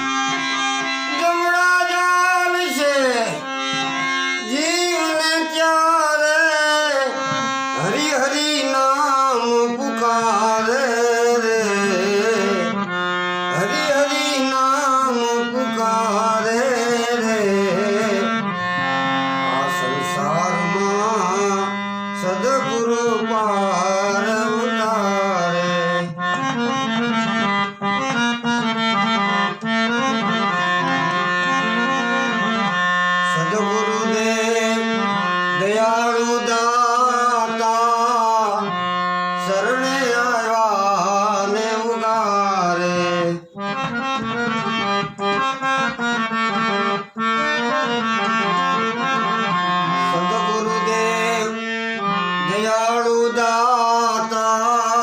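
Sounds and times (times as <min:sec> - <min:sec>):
tabla: 0:00.0 - 0:38.4
reedy melody: 0:00.0 - 0:55.0.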